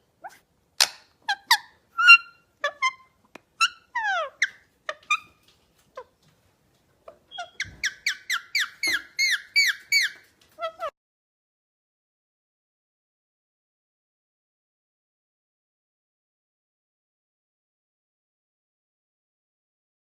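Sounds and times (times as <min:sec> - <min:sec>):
parrot chirps and squawks: 0:00.2 - 0:06.1, 0:07.1 - 0:10.9.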